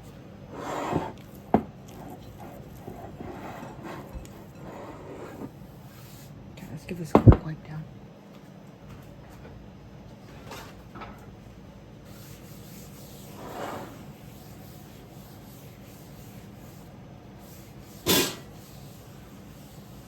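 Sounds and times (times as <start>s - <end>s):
cloth wiping a surface: 12.1s - 20.0s.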